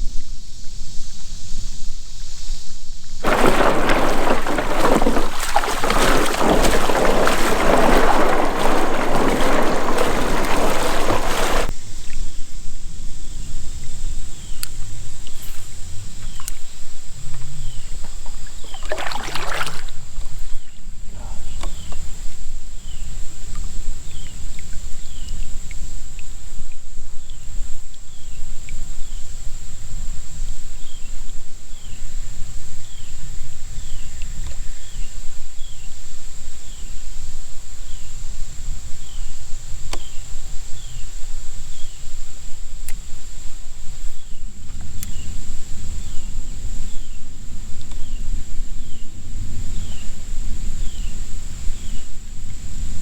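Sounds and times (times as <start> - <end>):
water rushing and splashing: 3.2 - 11.7, 18.9 - 19.9.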